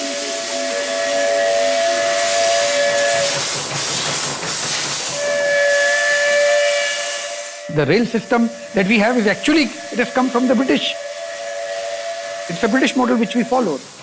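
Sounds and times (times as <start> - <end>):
hissing steam: 0.0 - 14.0
steam whistle blasts: 0.0 - 14.0.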